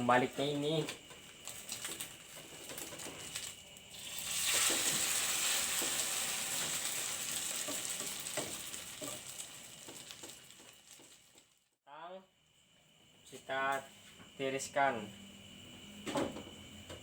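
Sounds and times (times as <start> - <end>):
omelet sizzling in oil: 1.3 - 11.7.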